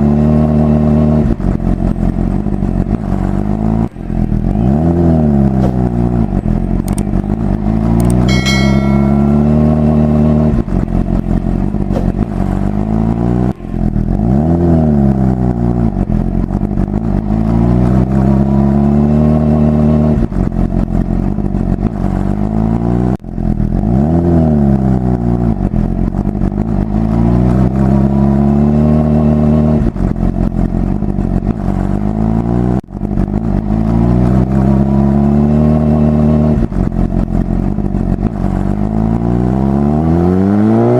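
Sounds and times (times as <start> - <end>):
simulated motorcycle engine sound: 0.0 - 40.9
high-pitched electronic chime: 8.3 - 9.9.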